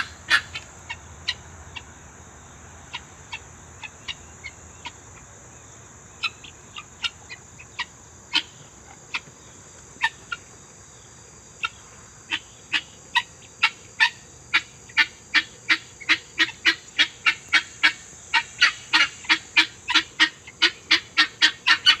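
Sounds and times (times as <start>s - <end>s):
farm bird calling: 0.0s - 1.9s, 2.8s - 22.0s.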